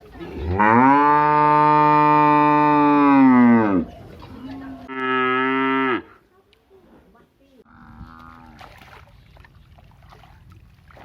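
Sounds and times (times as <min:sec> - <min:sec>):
cow mooing: 0:00.4 - 0:03.9, 0:04.8 - 0:06.1, 0:07.7 - 0:08.6.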